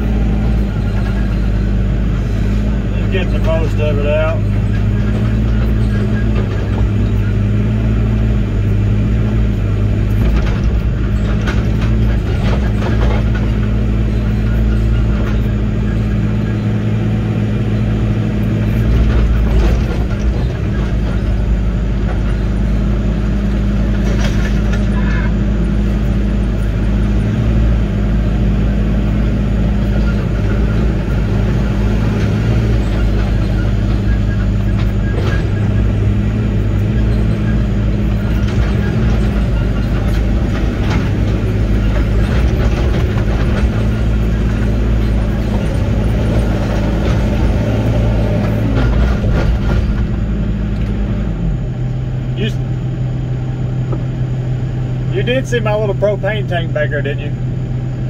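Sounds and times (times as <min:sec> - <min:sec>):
diesel engine running: 0:00.0 - 0:58.0
machine clanks and knocks: 0:03.1 - 0:07.3, 0:10.0 - 0:16.6, 0:18.6 - 0:22.7, 0:23.4 - 0:25.2, 0:29.8 - 0:51.0.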